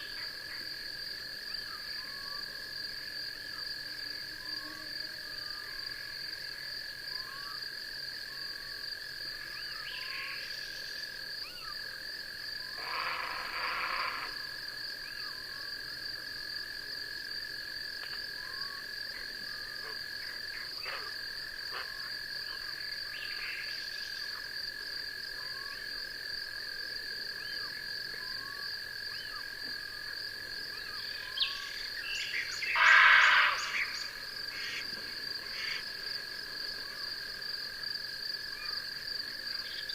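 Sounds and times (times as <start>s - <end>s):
high-pitched insect trills: 0.0s - 39.9s
raspy frog calls: 9.4s - 12.0s, 12.6s - 15.7s, 18.0s - 24.5s, 30.7s - 37.1s
short insect chirps: 12.7s - 15.4s, 30.7s - 35.9s.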